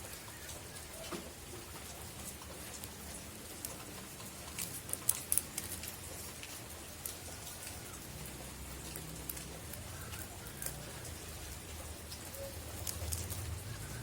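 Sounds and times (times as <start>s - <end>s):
raindrops ticking: 0.0s - 14.0s
steady rain falling: 0.0s - 14.0s.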